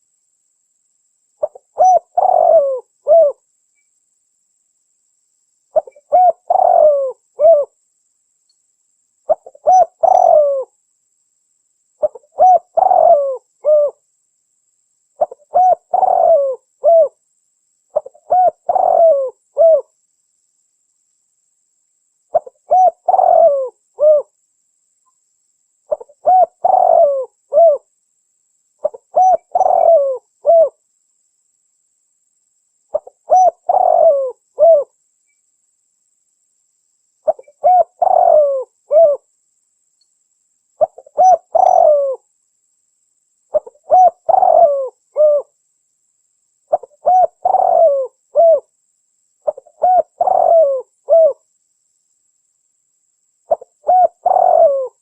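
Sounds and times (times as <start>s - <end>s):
dove cooing: 1.4s - 3.4s, 5.8s - 7.8s, 9.3s - 10.7s, 12.0s - 14.0s, 15.2s - 17.2s, 17.9s - 19.9s, 22.3s - 24.3s, 25.9s - 27.9s, 28.8s - 30.8s, 32.9s - 34.9s, 37.2s - 39.3s, 40.8s - 42.2s, 43.5s - 45.6s, 46.7s - 48.7s, 49.4s - 51.4s, 53.5s - 55.0s.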